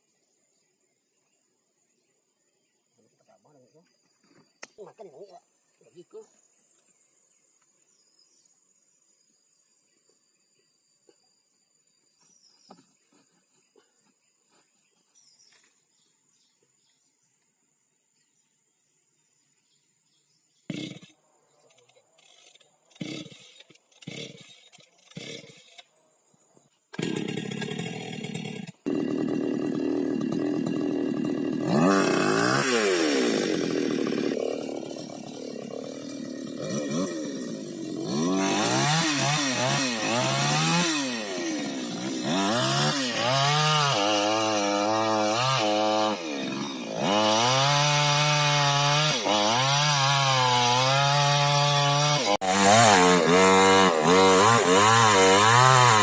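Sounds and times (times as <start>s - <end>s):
chainsaw cutting wood: 20.7s - 25.9s, 26.9s - 56.0s.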